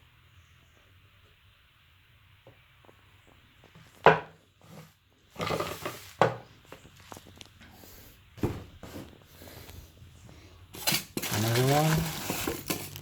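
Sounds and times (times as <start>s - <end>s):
scraping rustle: 4.6s - 7.5s, 10.8s - 13.0s.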